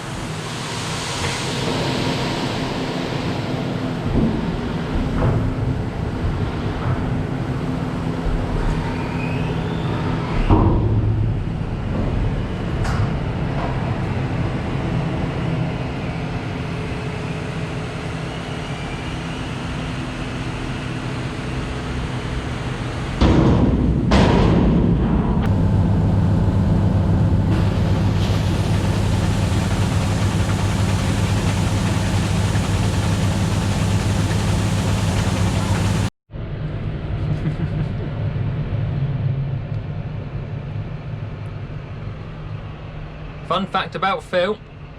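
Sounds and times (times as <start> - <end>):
diesel engine running: 25.5 - 36.1.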